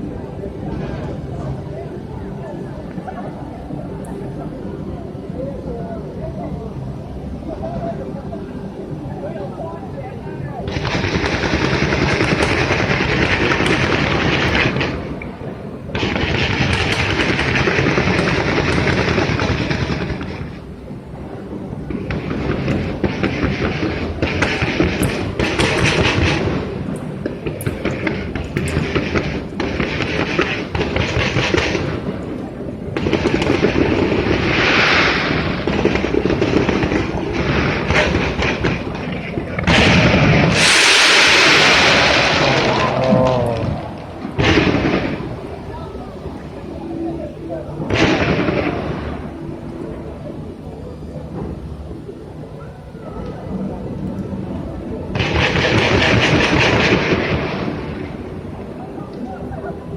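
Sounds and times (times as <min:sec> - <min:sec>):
fireworks bangs and crackles: 0:10.6 - 0:50.7, 0:54.6 - 0:59.9.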